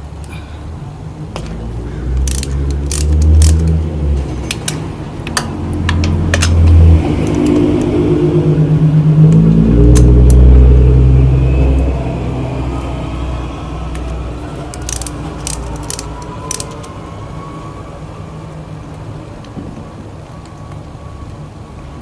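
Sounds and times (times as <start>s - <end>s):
car engine revving: 1.4s - 16.9s
sharp clicks: 2.2s - 3.8s, 14.8s - 16.9s.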